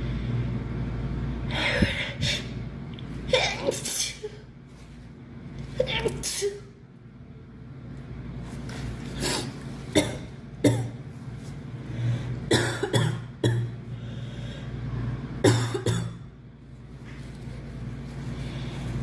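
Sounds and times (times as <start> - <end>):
girl sneezing: 3.3 - 4.4.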